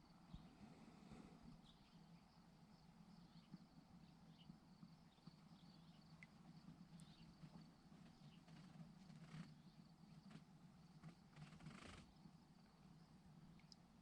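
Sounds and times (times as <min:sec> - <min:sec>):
faint low hum: 0:00.0 - 0:14.0
faint small ticks: 0:04.3 - 0:12.8, 0:13.4 - 0:13.9.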